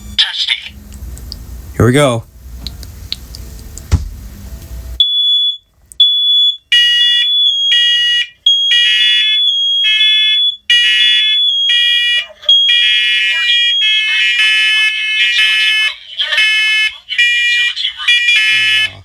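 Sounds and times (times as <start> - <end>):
smoke alarms beeping: 5.0 - 19.0.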